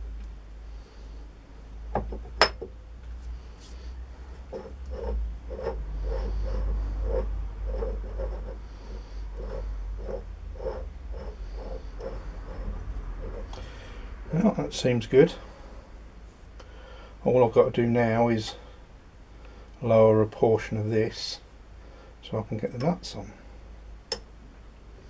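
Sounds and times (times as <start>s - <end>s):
file rasping on steel: 4.4s - 13.5s.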